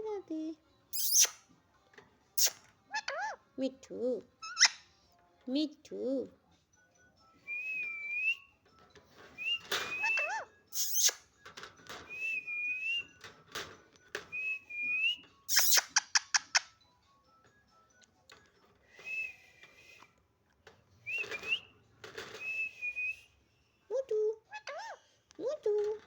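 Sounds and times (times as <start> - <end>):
parrot shrill calls: 0.9 - 1.4, 2.4 - 3.4, 4.4 - 4.8, 9.9 - 11.2, 15.5 - 16.6
parrot whistling: 1.0 - 1.4, 9.4 - 11.2, 14.3 - 16.6, 21.0 - 21.8, 22.4 - 23.3.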